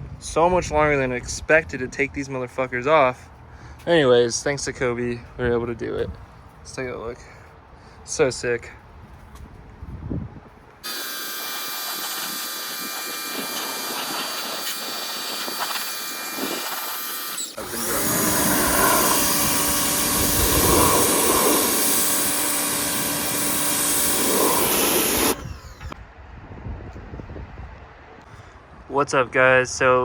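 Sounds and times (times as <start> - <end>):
power tool whining: 10.8 - 26.0.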